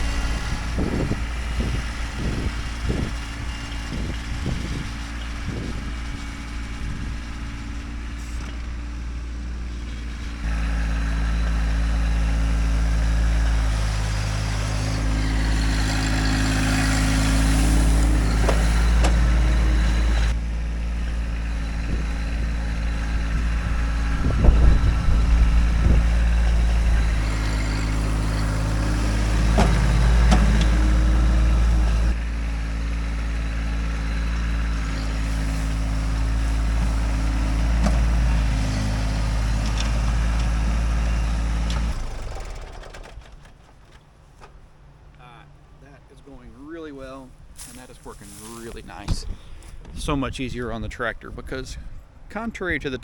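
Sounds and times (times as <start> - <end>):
tractor diesel engine running: 0.0 - 53.0
clanks and knocks: 18.2 - 19.4, 28.8 - 31.0.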